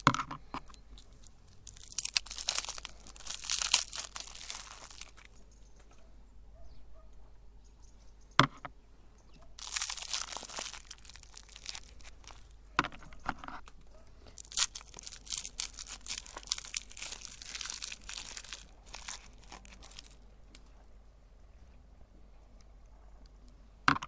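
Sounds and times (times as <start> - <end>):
candy crushed in meat grinder: 0.9 - 5.4, 9.6 - 12.7, 14.2 - 20.2.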